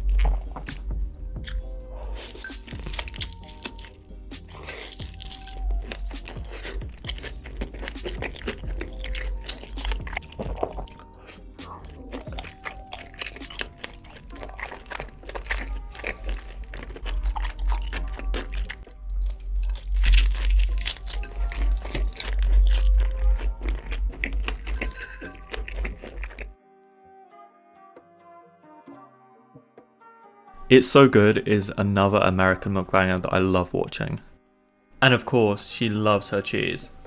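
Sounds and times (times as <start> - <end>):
music with heavy bass: 0.0 - 12.4
person chewing crunchy food: 0.0 - 26.6.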